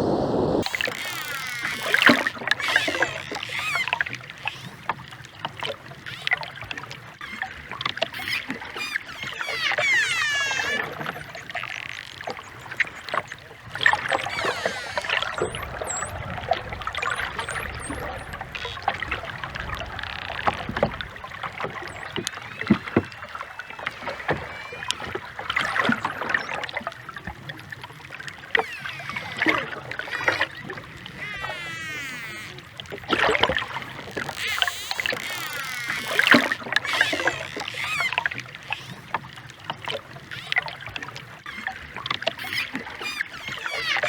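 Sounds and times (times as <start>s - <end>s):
dolphin whistles: 0.6s - 4.0s, 8.2s - 12.0s, 13.7s - 26.7s, 28.7s - 32.7s, 34.3s - 38.2s, 42.4s - 44.0s
dolphin echolocation clicks: 0.6s - 4.8s, 28.6s - 38.9s.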